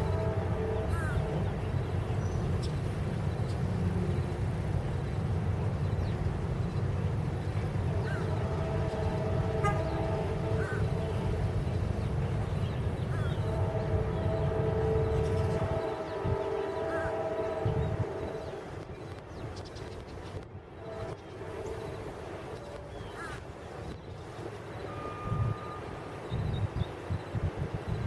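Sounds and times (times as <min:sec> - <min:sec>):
locomotive air horn chord: 0:00.0 - 0:02.1, 0:07.5 - 0:18.8, 0:20.8 - 0:22.3, 0:24.8 - 0:26.0
diesel locomotive engines rumbling: 0:00.0 - 0:28.0.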